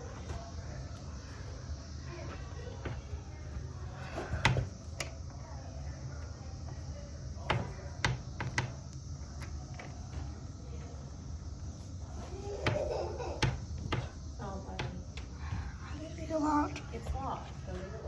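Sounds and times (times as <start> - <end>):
steady low hum: 0.0 - 18.0
sharp knocks and clicks: 7.5 - 8.8, 13.4 - 15.3.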